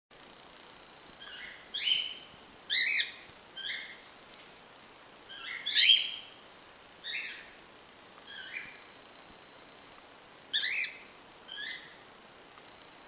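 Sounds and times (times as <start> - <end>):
cockatiel chirping: 1.2 - 4.0, 5.3 - 6.3, 7.0 - 7.5, 8.3 - 8.8, 10.5 - 12.0
loud cockatiel call: 1.2 - 4.0, 5.3 - 6.3, 7.0 - 7.5, 10.5 - 12.0.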